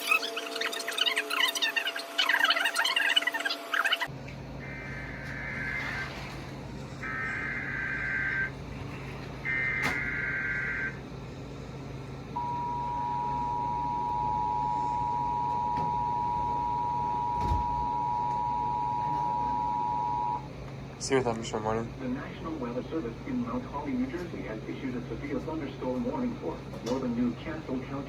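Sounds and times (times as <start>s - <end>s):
screeching data tones: 0.0s - 6.3s, 7.0s - 8.5s, 9.4s - 11.0s
two-tone attention signal: 12.4s - 20.4s.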